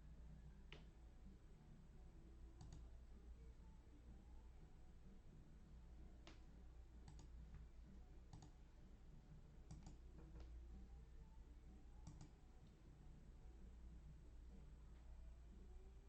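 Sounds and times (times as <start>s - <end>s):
low steady hum: 0.0s - 16.0s
faint sharp clicks: 2.6s - 2.9s, 7.0s - 7.3s, 9.7s - 10.5s, 12.0s - 12.4s.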